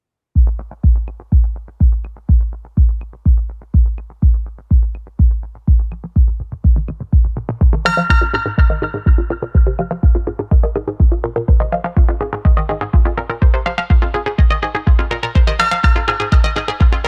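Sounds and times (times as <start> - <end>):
kick drum beat: 0.4 - 17.0
synthesizer notes: 5.6 - 17.0.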